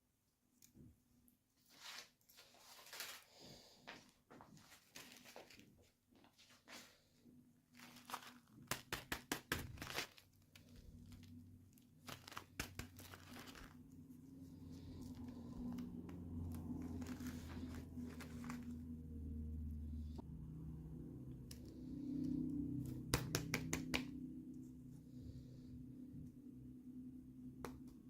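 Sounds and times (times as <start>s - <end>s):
packaging crinkling and tearing: 7.7s - 14.1s, 14.8s - 19.0s.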